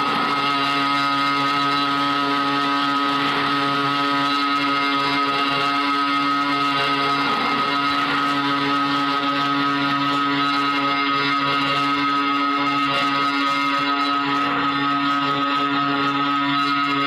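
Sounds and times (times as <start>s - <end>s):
motor scooter engine running: 0.0s - 17.0s.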